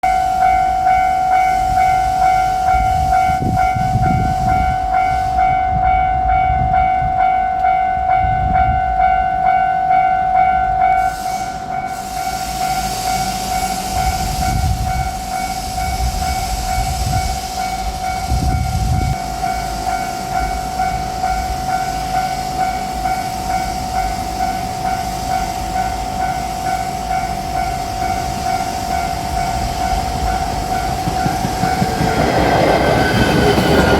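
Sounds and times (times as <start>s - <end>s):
electric train rumbling: 0.0s - 33.9s.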